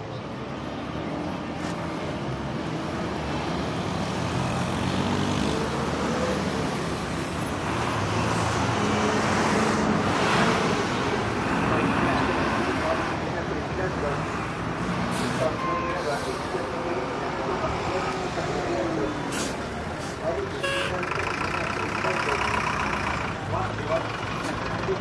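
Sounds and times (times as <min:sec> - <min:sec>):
hissing road noise: 0:01.0 - 0:25.0
vehicle engines running: 0:01.1 - 0:25.0.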